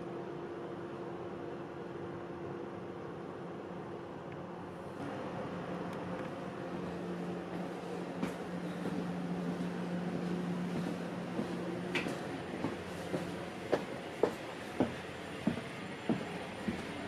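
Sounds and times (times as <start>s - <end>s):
train cabin hum: 5.0s - 17.0s.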